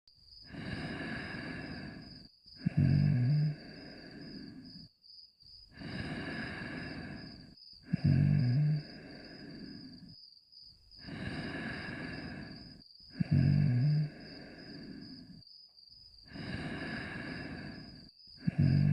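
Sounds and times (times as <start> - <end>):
cricket-like chirping: 0.1 - 18.9
cartoon dog snoring: 0.4 - 4.9, 5.7 - 10.1, 11.0 - 15.4, 16.3 - 18.9.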